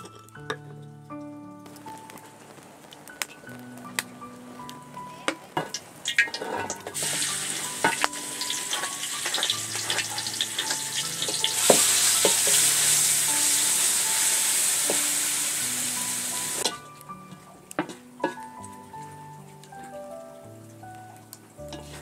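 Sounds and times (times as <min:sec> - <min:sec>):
soft background music: 0:00.0 - 0:22.0
food sizzling in a pan: 0:01.7 - 0:16.9.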